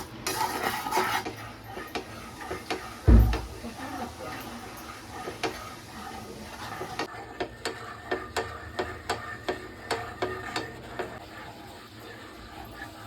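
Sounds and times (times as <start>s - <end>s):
spoon knocking against a pot: 2.6s - 3.6s.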